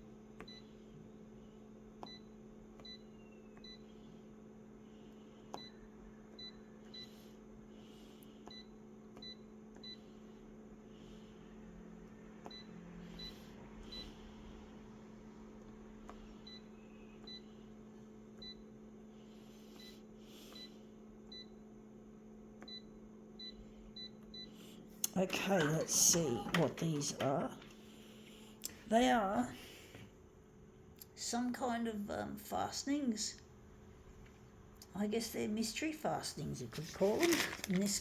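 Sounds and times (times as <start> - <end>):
steady low hum: 0.0 - 38.0
soft rustles: 36.6 - 38.0.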